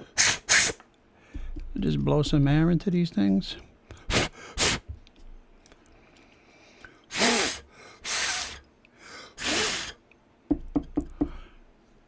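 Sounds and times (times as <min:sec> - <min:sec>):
hard puffs of breath: 0:03.9 - 0:04.9, 0:06.4 - 0:10.0.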